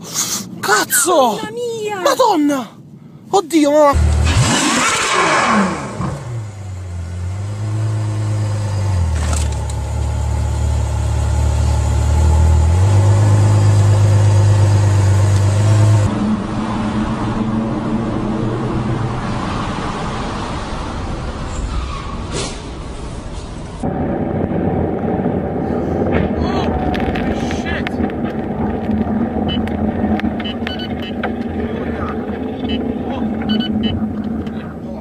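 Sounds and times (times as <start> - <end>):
car engine running: 23.8 - 35.0.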